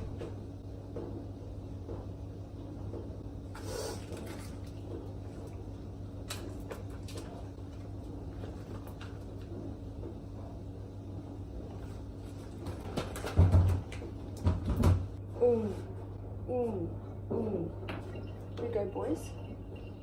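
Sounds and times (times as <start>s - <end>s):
steady low hum: 0.0s - 20.0s.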